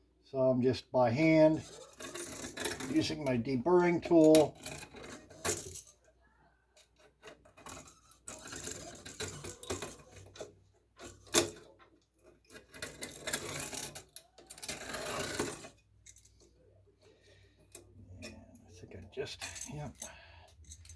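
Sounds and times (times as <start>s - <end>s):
deburring tool scraping metal tube: 1.4s - 5.9s, 6.9s - 11.7s, 12.6s - 16.3s.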